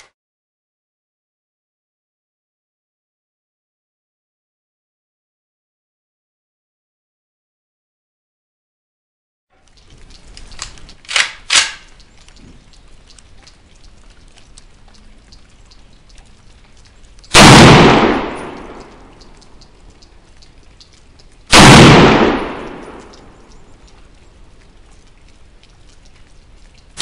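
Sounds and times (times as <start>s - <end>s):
rifle shots with echo: 11.1s - 11.9s, 17.3s - 19.1s, 21.5s - 23.3s.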